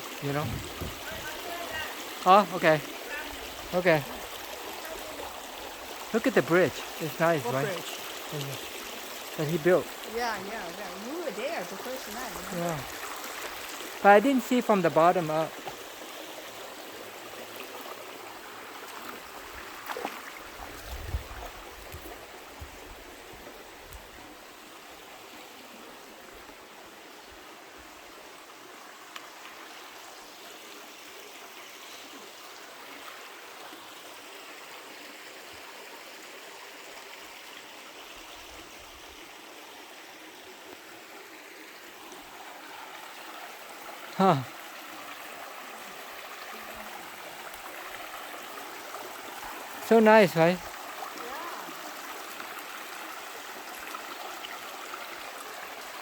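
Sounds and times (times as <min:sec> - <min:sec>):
creek water babbling: 0:00.0 - 0:56.0
dull bumps: 0:00.4 - 0:01.2.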